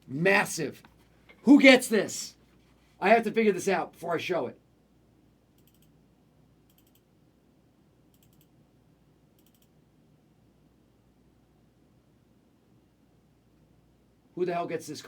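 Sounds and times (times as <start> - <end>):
faint rapid clicking: 5.5 - 6.0, 6.6 - 7.1, 8.1 - 8.6, 9.3 - 9.8.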